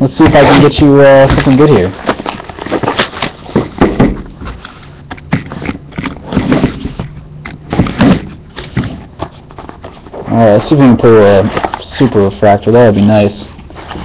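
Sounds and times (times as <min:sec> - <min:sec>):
cardboard box and wrapper handling: 0:00.3 - 0:03.8.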